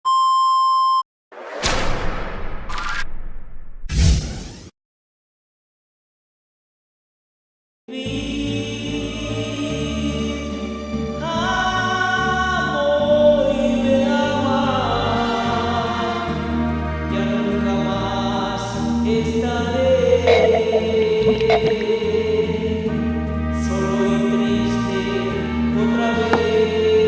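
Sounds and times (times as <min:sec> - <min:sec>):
music with chords and bass: 0:20.0 - 0:22.5.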